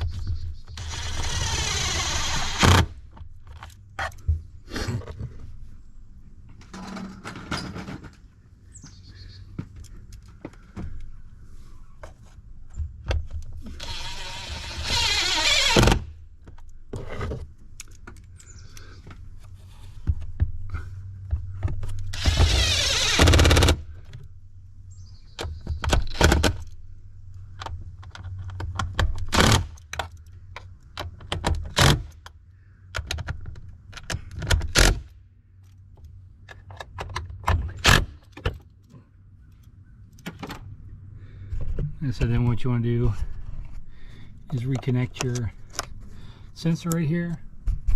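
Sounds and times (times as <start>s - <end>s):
cordless impact driver running: 0.8s - 3.0s, 13.8s - 16.1s, 22.1s - 23.8s.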